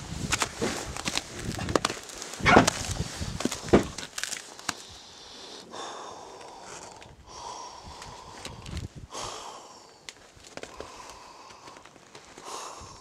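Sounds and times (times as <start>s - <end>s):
person breathing hard: 4.7s - 13.0s.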